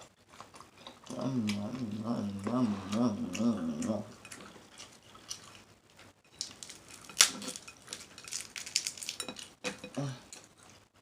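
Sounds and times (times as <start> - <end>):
wet clicks and crackles of eating: 3.3 - 10.9.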